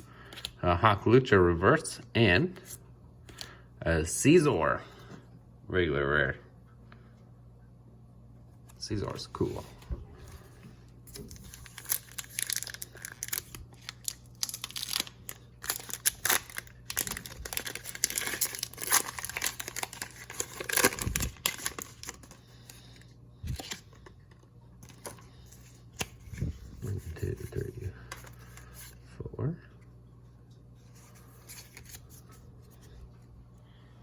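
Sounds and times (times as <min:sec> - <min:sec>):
foil wrapper tearing and crinkling: 0:11.1 - 0:22.7.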